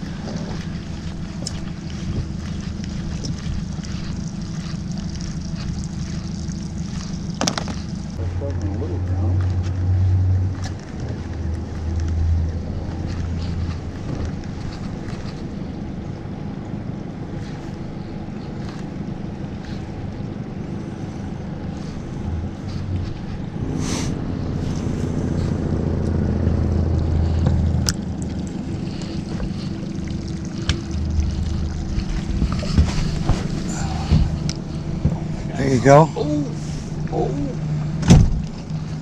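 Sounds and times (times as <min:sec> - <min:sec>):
wind on microphone: 0:00.0 - 0:06.0, 0:30.4 - 0:35.6
boat motor running: 0:00.0 - 0:39.0.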